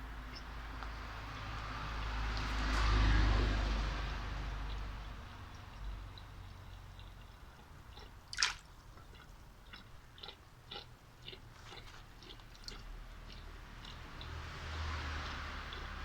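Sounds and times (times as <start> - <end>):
goldfish splashing in water: 1.6 - 9.8
water drips: 4.2 - 9.9.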